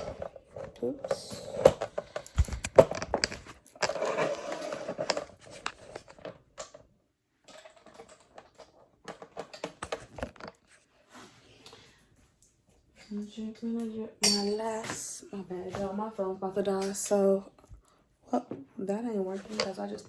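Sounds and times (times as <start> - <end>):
handling clicks and knocks: 0.5 - 4.0, 7.5 - 10.7.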